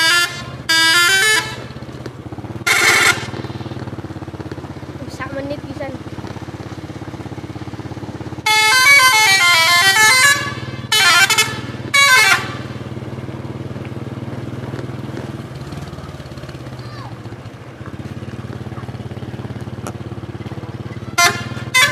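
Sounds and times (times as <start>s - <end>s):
musical air horn: 0.0s - 1.8s, 2.6s - 3.4s, 8.4s - 12.8s, 21.1s - 21.9s
vehicle engine idling: 0.0s - 21.9s.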